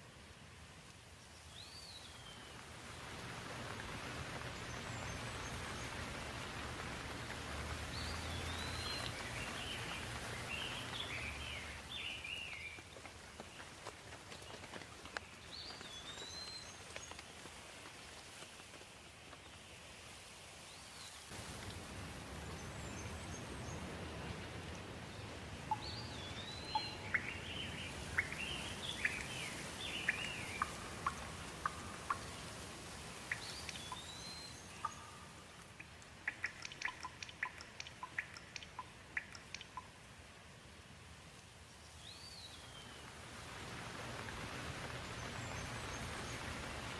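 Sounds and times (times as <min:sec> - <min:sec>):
steady rain: 0:00.0 - 0:46.9
songbirds calling: 0:03.7 - 0:17.3, 0:21.0 - 0:39.9, 0:41.7 - 0:43.1.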